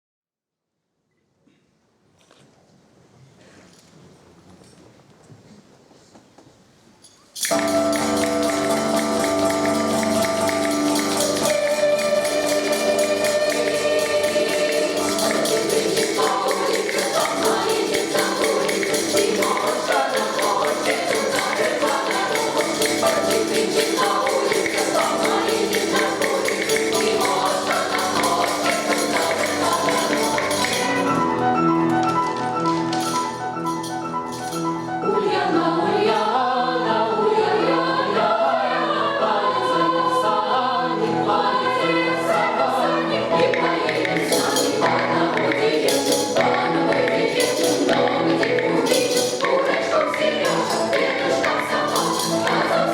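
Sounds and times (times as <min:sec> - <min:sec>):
jingling rattling percussion: 0:07.0 - 0:35.1, 0:43.5 - 0:52.9
choir singing folk song: 0:07.5 - 0:33.4, 0:34.7 - 0:52.9.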